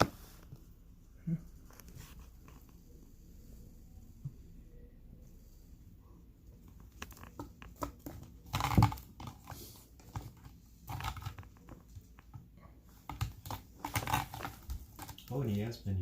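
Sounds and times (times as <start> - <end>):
cat chewing and crunching: 6.6 - 15.7.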